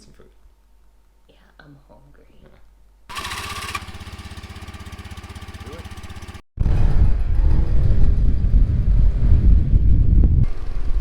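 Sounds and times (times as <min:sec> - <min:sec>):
motorbike engine idling: 0:03.1 - 0:06.4
wind buffeting microphone: 0:06.6 - 0:11.0.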